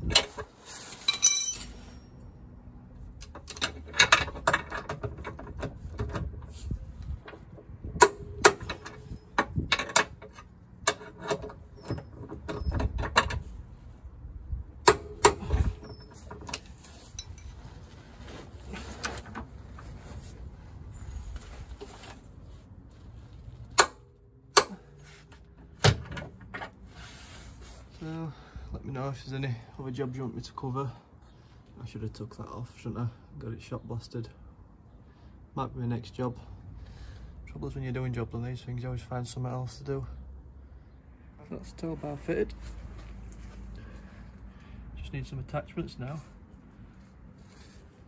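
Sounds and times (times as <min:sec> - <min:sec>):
metal tools clinking and knocking: 0:00.0 - 0:02.2, 0:03.2 - 0:06.5, 0:07.2 - 0:13.5, 0:14.8 - 0:17.7.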